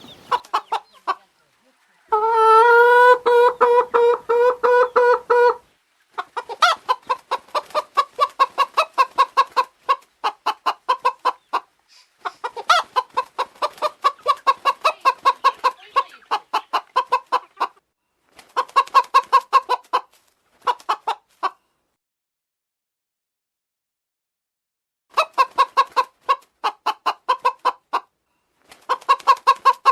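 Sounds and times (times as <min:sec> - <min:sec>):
chicken squawks: 0:00.0 - 0:01.3, 0:02.0 - 0:05.6, 0:06.2 - 0:17.8
chickens clucking: 0:00.0 - 0:21.6, 0:25.1 - 0:29.9.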